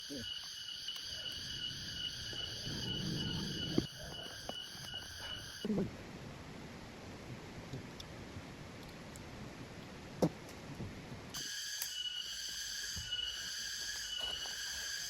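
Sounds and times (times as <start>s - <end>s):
chorus of forest insects: 0.0s - 5.7s, 11.4s - 15.0s.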